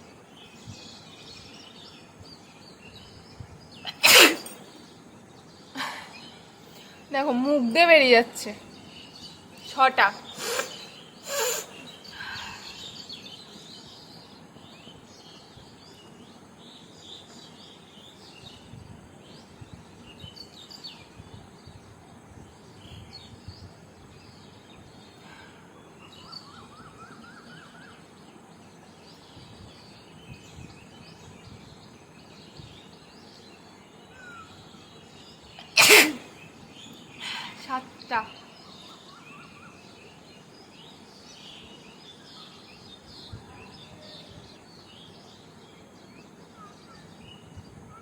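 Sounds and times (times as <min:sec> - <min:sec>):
small birds chirping: 0:00.0 - 0:48.0
loud sneeze: 0:03.9 - 0:04.7, 0:35.6 - 0:36.4.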